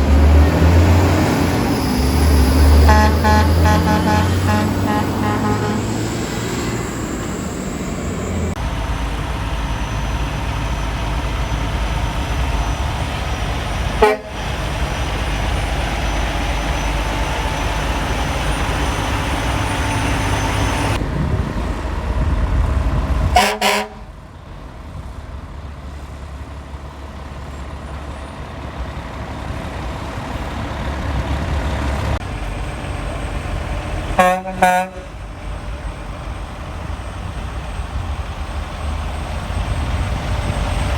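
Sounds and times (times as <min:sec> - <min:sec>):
truck horns honking: 0:00.0 - 0:08.6, 0:10.0 - 0:21.0, 0:23.2 - 0:24.2, 0:33.1 - 0:36.0
road traffic: 0:00.0 - 0:40.9
truck engines rumbling: 0:00.0 - 0:40.9.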